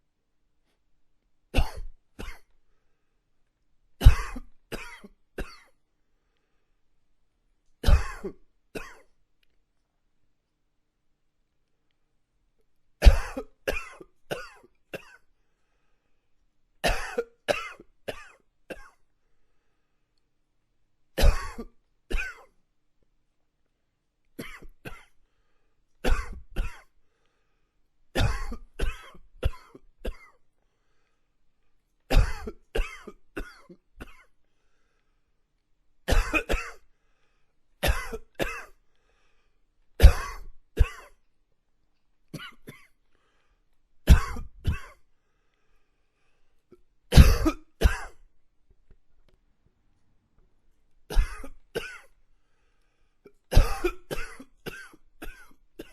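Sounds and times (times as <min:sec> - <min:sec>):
man coughing: 0:01.6 - 0:02.5, 0:04.0 - 0:05.8, 0:07.8 - 0:09.1, 0:13.0 - 0:15.2, 0:16.8 - 0:19.0, 0:21.2 - 0:22.5, 0:26.1 - 0:26.9, 0:28.2 - 0:30.4, 0:32.1 - 0:34.2, 0:36.1 - 0:36.8, 0:37.8 - 0:38.8, 0:40.0 - 0:41.2, 0:44.1 - 0:45.0, 0:47.1 - 0:48.2, 0:51.1 - 0:52.1, 0:53.5 - 0:55.9.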